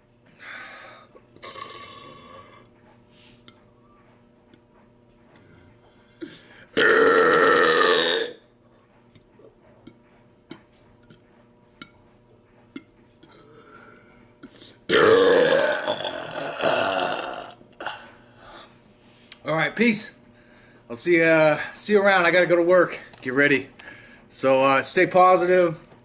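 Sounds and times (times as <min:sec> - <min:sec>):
man burping loudly: 0:01.4 - 0:02.7, 0:06.2 - 0:08.4, 0:14.9 - 0:18.0.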